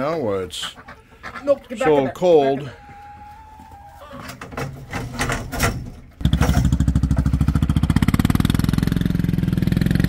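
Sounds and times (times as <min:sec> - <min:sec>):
small engine puttering: 0:04.5 - 0:10.0.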